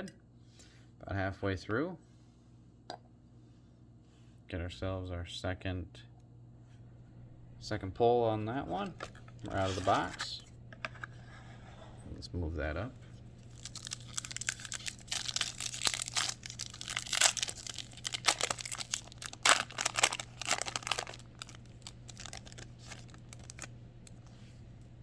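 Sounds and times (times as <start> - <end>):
cards rustling: 8.6 - 11.3, 13.2 - 24.8
wrapper crinkling: 8.8 - 10.4, 13.2 - 25.0.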